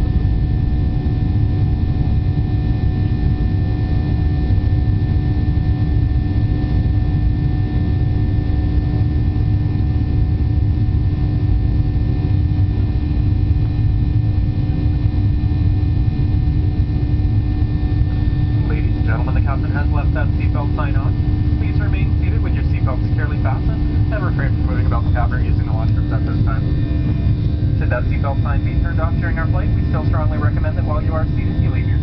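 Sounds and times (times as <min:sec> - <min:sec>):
jet cabin low roar: 0:00.0 - 0:32.0
steady whining tones: 0:12.2 - 0:32.0.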